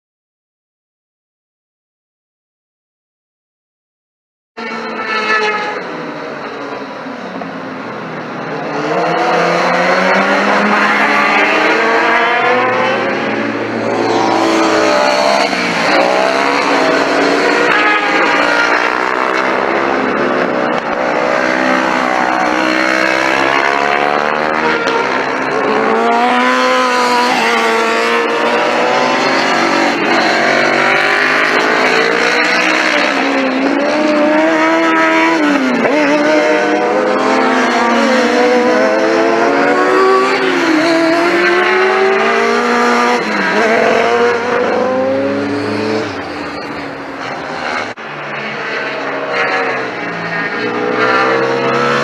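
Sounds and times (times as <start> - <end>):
racing motorcycles revving past: 8.6 - 46.4, 48.6 - 52.0.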